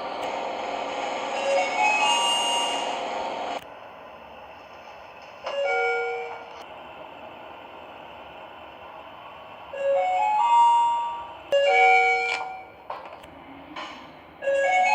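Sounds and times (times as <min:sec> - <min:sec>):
steady background noise: 0:00.0 - 0:14.9
elevator chime: 0:05.6 - 0:06.5, 0:09.8 - 0:12.8.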